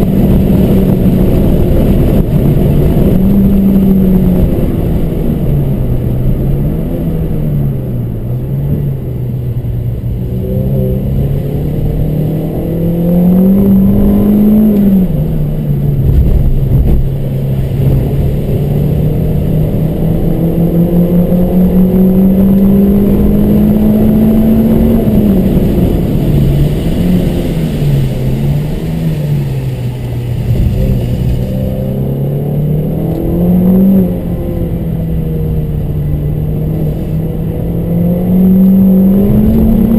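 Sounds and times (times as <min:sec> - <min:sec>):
race car engine revving: 0:10.1 - 0:39.9.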